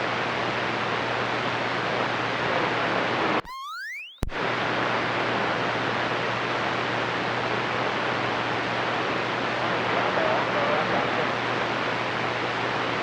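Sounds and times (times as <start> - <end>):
rising-pitch radio beep: 3.5 - 4.4.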